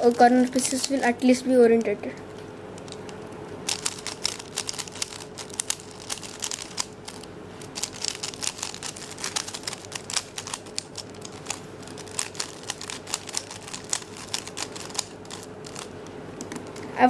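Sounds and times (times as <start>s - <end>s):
puzzle cube layers clicking: 3.7s - 16.8s.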